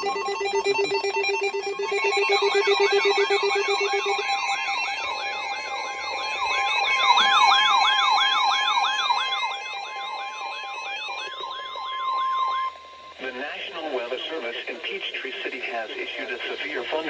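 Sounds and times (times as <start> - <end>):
siren-like falling sweeps: 0.0 - 14.1
steady warning tone: 0.0 - 17.0.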